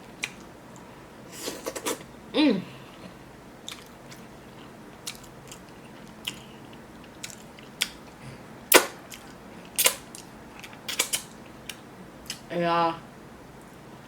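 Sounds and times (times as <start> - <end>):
wet chewing smacks and clicks: 3.6 - 4.2, 5.0 - 6.5.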